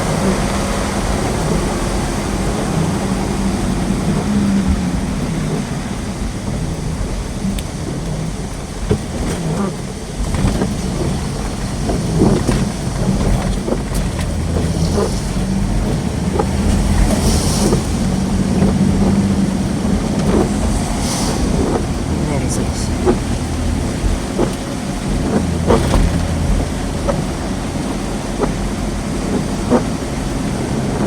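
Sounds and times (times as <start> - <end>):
vehicle engine and road hum: 0.0 - 31.0
light ticks and taps: 2.6 - 31.0.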